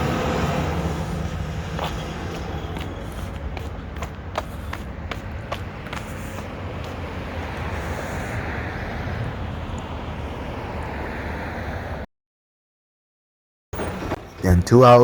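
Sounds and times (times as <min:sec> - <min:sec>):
garbage truck diesel engine rumbling: 0:00.0 - 0:10.4.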